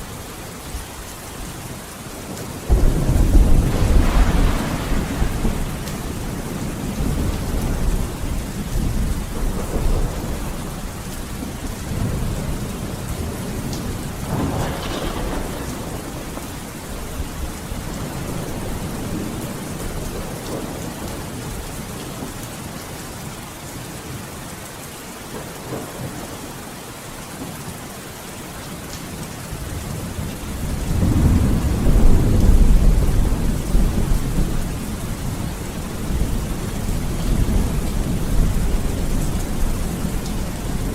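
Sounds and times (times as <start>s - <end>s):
heavy rain: 0.0s - 40.9s
rolling thunder: 2.7s - 21.6s, 30.2s - 40.9s.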